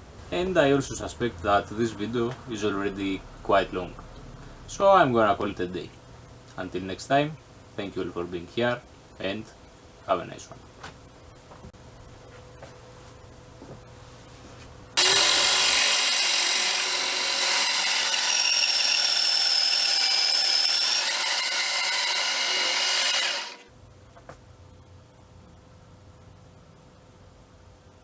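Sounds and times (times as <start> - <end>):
power tool whining: 15.0 - 23.7.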